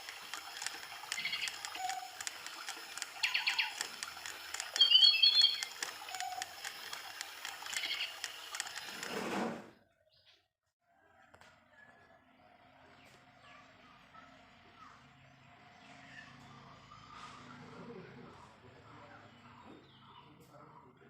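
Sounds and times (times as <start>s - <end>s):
electronic toy bird chirping: 0.0s - 9.1s.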